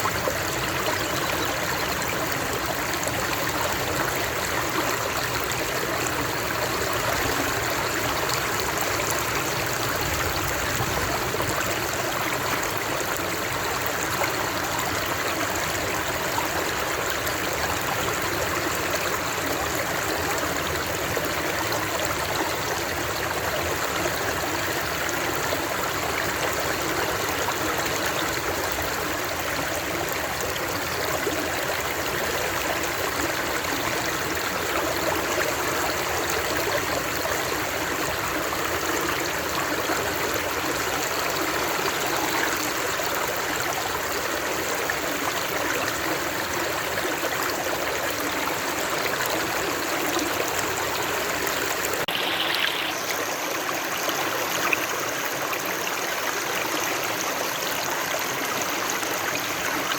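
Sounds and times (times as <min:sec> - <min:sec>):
flowing water: 0:00.0 - 0:59.9.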